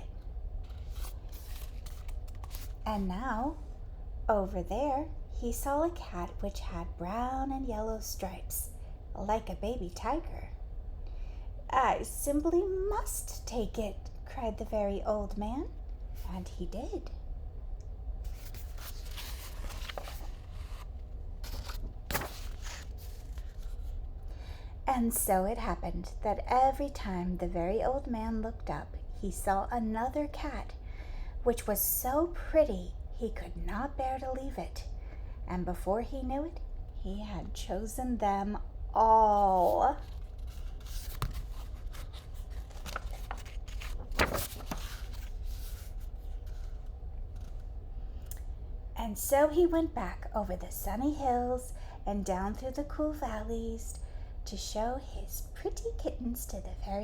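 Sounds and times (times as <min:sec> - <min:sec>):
steady low hum: 0:00.0 - 0:57.0
book page turning: 0:00.6 - 0:02.8, 0:18.3 - 0:24.0, 0:39.5 - 0:47.7
paper rustling: 0:00.6 - 0:02.8, 0:18.3 - 0:24.0, 0:39.4 - 0:47.7
low hum: 0:36.9 - 0:49.1.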